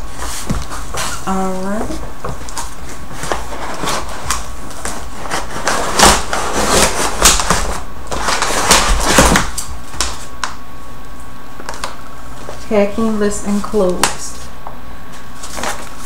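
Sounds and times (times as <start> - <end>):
cardboard box rustling and scraping: 0.0 - 9.4.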